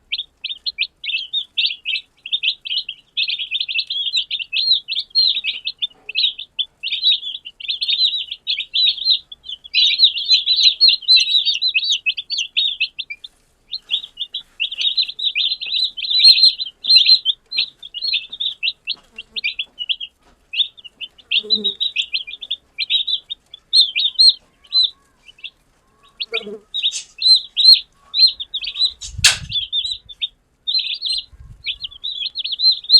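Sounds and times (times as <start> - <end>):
chicks peeping: 0.0 - 32.9.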